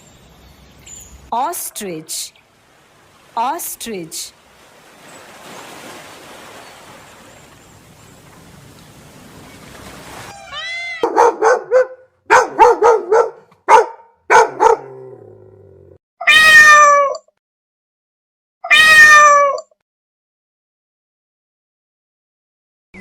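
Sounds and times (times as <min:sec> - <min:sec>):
bird calls: 0:06.5 - 0:10.0.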